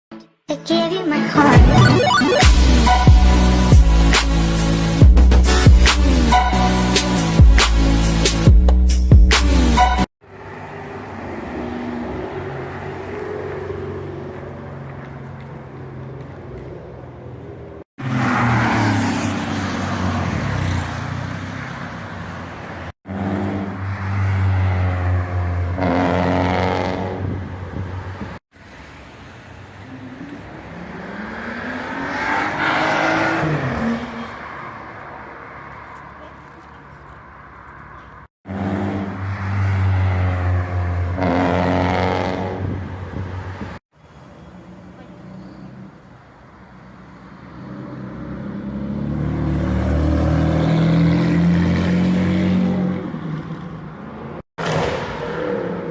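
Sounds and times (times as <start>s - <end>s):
sports car engines revving: 23.1s - 28.2s, 29.8s - 34.4s, 38.5s - 43.6s, 47.6s - 53.4s.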